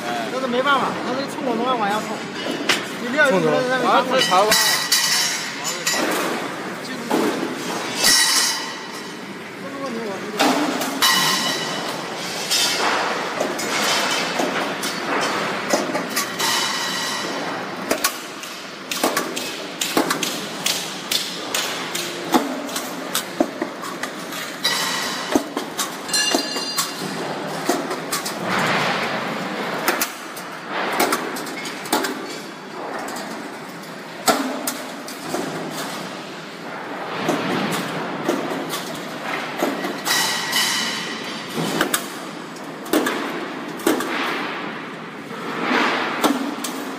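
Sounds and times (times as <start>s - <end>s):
sharp metal knocks and clanks: 10.4s - 33.4s, 37.2s - 42.2s.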